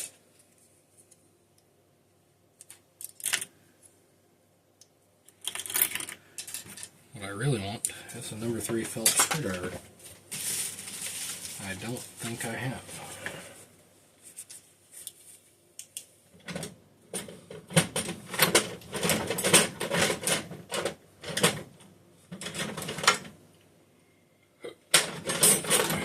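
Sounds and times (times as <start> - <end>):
tools clicking and clattering: 5.3 - 6.9, 8.8 - 9.7, 16.4 - 21.6, 25.0 - 26.0.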